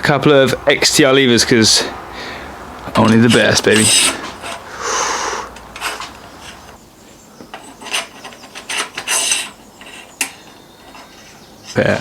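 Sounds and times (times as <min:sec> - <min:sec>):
brake levers scraping: 0:05.5 - 0:06.8.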